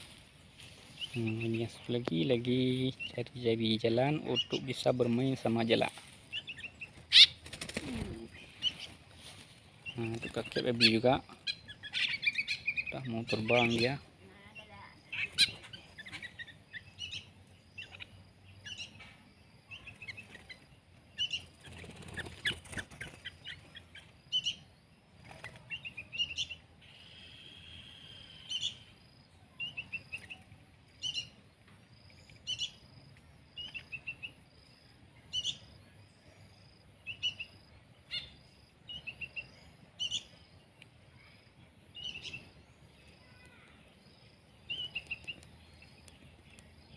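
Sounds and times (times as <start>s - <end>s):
young songbird chirping: 0.0s - 7.4s, 8.0s - 46.9s
rustle of movement: 0.0s - 11.6s.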